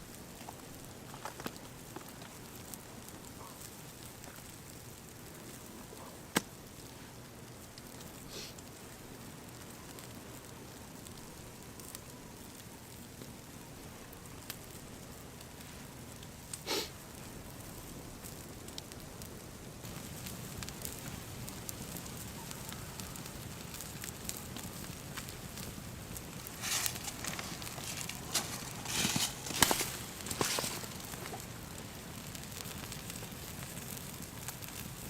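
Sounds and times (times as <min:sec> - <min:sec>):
campfire crackling and popping: 0:00.0 - 0:35.0
rustling: 0:26.4 - 0:31.5.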